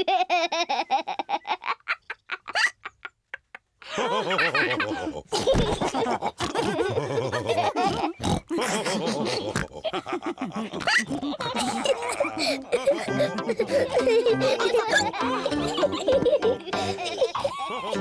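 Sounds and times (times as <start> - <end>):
pigs snorting and laughing: 4.0 - 18.0
cartoon pig voices: 6.3 - 9.9, 10.6 - 12.4.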